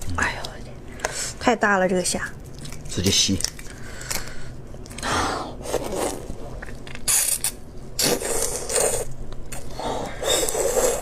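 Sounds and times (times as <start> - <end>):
slurping: 5.6 - 11.0.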